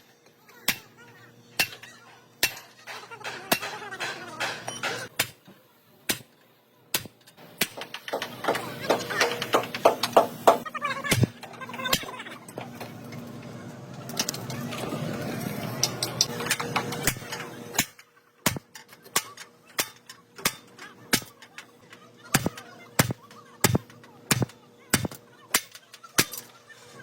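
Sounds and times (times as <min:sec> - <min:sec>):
noisy clatter: 0:07.0 - 0:27.0.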